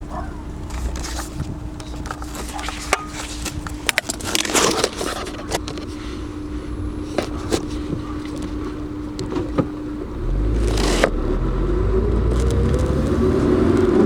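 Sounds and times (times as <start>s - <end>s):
car engine idling: 0.0s - 14.0s
brief rustling: 0.1s - 6.3s.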